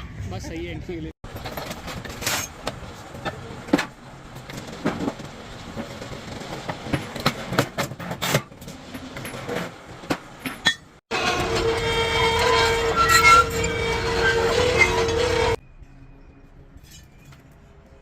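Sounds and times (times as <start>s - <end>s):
heavy steel parts clanking: 1.2s - 15.6s.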